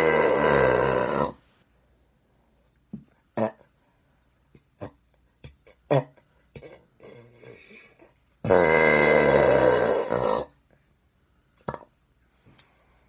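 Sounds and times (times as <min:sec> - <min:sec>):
woman belching: 0:00.0 - 0:01.4, 0:08.5 - 0:10.5.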